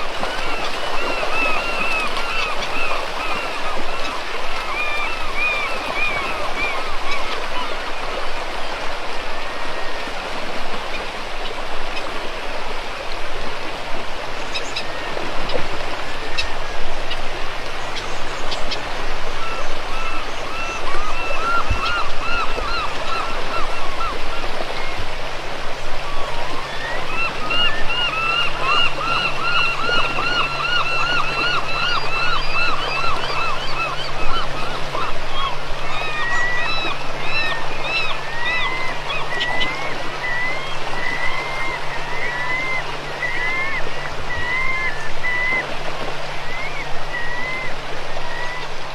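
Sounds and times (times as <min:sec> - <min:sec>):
river water rushing: 0:00.0 - 0:48.9.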